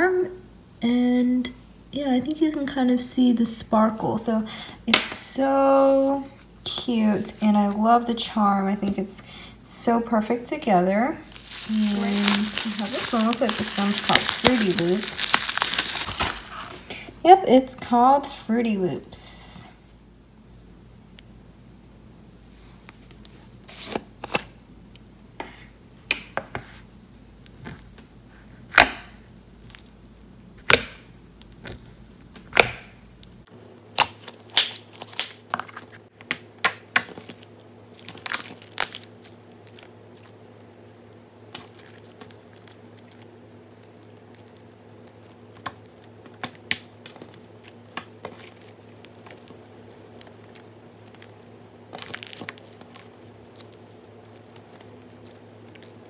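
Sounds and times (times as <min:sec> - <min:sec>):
slime clicking and popping: 0:41.5 - 0:56.0.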